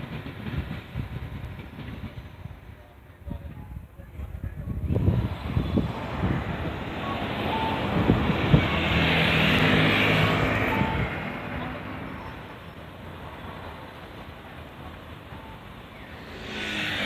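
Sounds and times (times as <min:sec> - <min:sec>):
vehicle passing by: 0:16.0 - 0:17.0.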